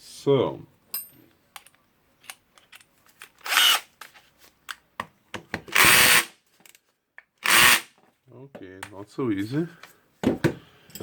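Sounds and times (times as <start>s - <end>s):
power drill driver running: 3.4s - 3.9s, 5.7s - 6.3s, 7.4s - 7.9s.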